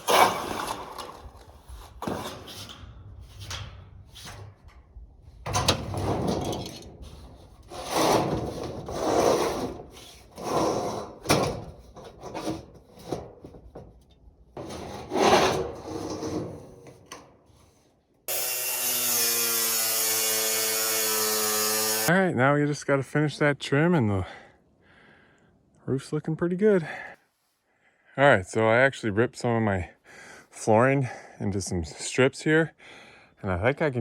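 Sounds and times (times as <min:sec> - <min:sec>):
scraping and rubbing on wood: 0:06.3 - 0:13.9, 0:14.6 - 0:17.0.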